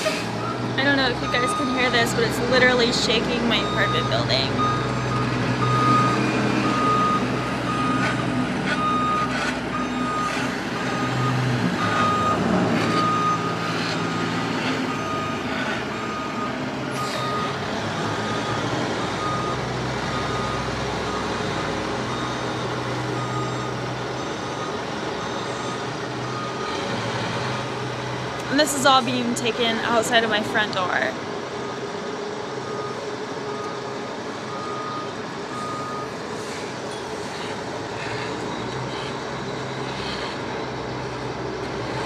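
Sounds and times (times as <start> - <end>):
diesel engine low rumble: 0.0 - 42.0
backup alarm beeping: 0.4 - 14.3, 14.9 - 26.8.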